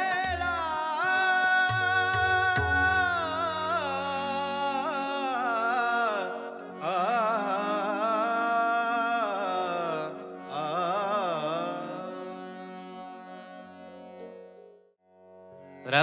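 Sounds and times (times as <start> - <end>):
person singing wordless phrases: 0.0 - 12.6.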